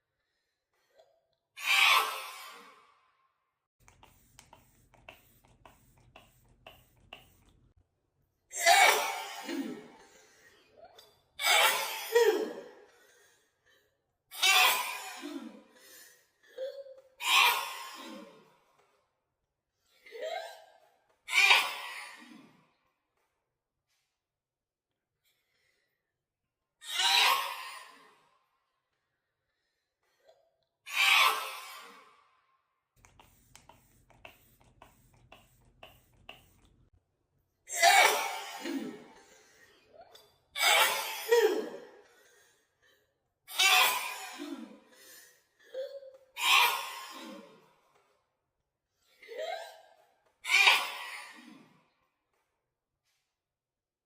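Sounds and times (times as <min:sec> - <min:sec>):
woman sneezing: 0:08.5 - 0:10.0, 0:37.7 - 0:39.2
gasping breath: 0:33.0 - 0:36.9.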